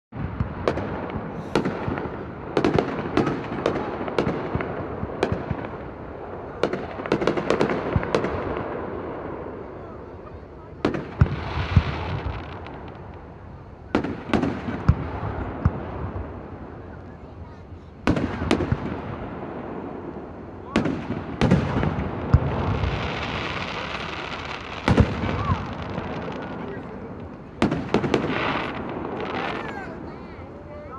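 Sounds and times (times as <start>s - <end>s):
distant firework bursts and crackle: 0.1s - 30.9s
firework bangs and pops: 0.2s - 9.5s, 10.8s - 13.3s, 13.9s - 16.7s, 18.0s - 29.9s
rumbling echo: 18.1s - 30.3s.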